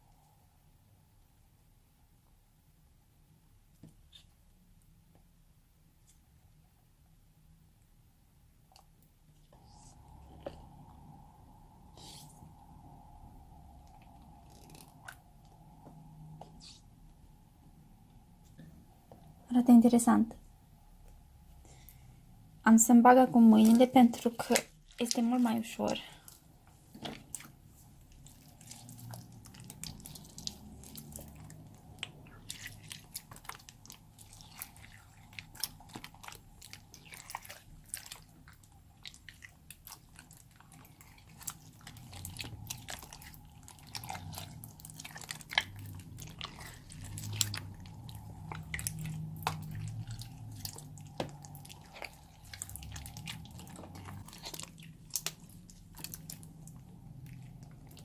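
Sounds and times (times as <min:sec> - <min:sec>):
hands kneading slime: 0:08.6 - 0:20.2, 0:22.7 - 0:58.0.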